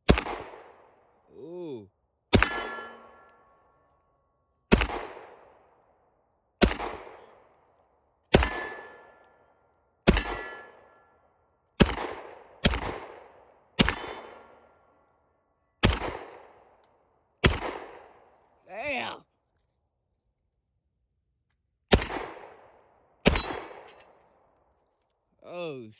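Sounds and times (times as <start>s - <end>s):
pistol shots with ringing tail: 0.1s - 1.2s, 2.3s - 3.8s, 4.7s - 5.8s, 6.6s - 7.7s, 8.3s - 14.9s, 15.8s - 16.8s, 17.4s - 18.4s, 21.9s - 24.5s.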